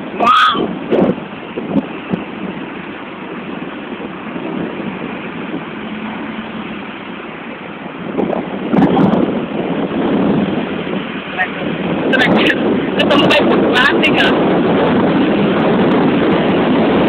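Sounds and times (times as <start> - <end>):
road vehicle noise: 0.0 - 17.0
wind on microphone: 0.0 - 17.0.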